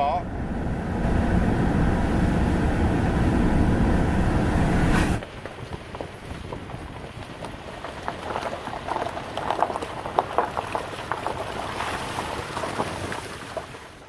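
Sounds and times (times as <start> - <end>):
creek water gurgling and splashing: 4.9 - 14.0.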